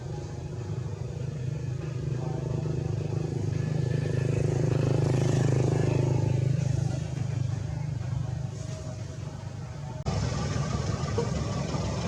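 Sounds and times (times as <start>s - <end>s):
vehicle engine running: 0.0s - 12.0s.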